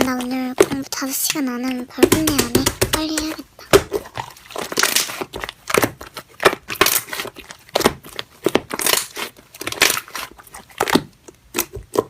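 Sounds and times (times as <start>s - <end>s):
slime squishing by hand: 0.0s - 12.0s.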